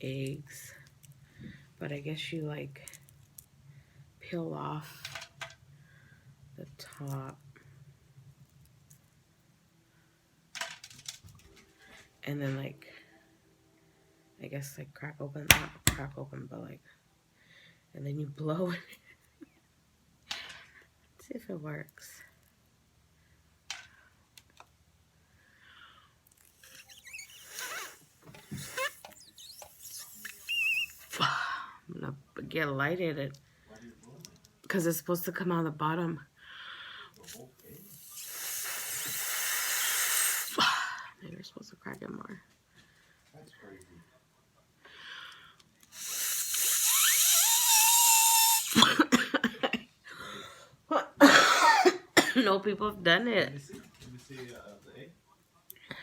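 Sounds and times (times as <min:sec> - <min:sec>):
airy blowing with squeaks: 0:26.5 - 0:31.2, 0:37.8 - 0:40.6, 0:45.9 - 0:49.0
person blowing into egg: 0:26.5 - 0:31.3, 0:37.8 - 0:40.7, 0:45.9 - 0:49.0
breathy coughs or laughs: 0:48.8 - 0:49.9, 0:51.2 - 0:52.4.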